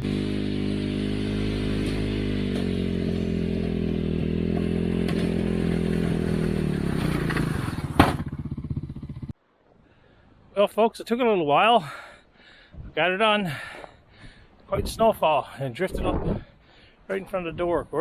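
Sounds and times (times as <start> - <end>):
vehicle engine running: 0.0 - 9.3.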